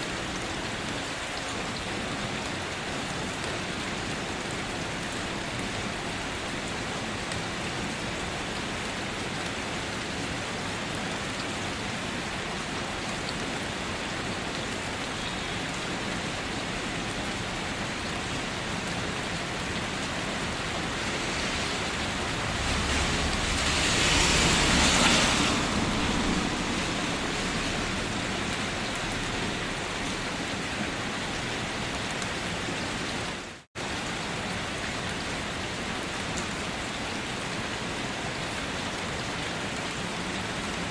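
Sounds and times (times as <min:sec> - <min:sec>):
steady rain falling: 0:00.0 - 0:40.9
low rumble: 0:21.2 - 0:28.6.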